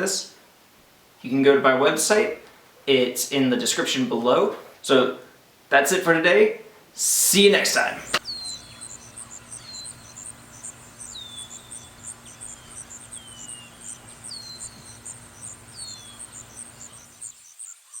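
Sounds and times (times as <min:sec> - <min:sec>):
insects chirping: 0:07.1 - 0:18.0.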